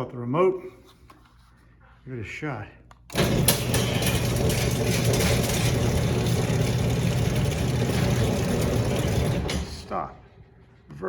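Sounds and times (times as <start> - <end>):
garage door opener motor humming: 3.1 - 10.8.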